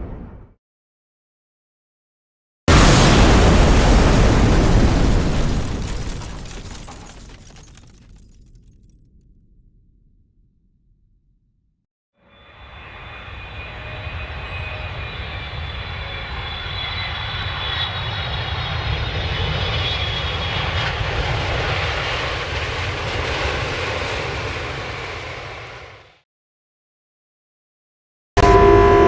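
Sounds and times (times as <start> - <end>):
faint high whine: 12.2 - 20.5, 28.4 - 29.0.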